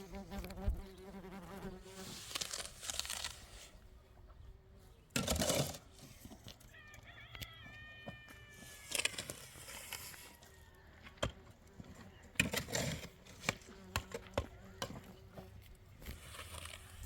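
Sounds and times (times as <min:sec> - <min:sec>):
scraping noises: 0:01.8 - 0:03.8, 0:08.1 - 0:17.0.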